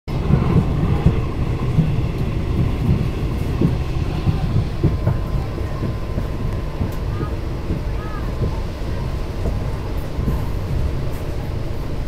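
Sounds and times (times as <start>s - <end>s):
wheels knocking and clattering: 0.1s - 11.3s
train rumbling on rails: 0.1s - 12.0s.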